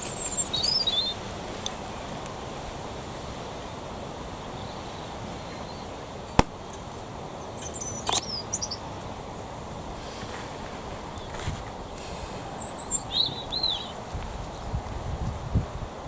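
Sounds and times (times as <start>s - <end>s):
high bird chirps: 0.0s - 1.3s, 7.4s - 8.9s, 11.1s - 14.0s
outdoor background hiss: 0.0s - 16.0s.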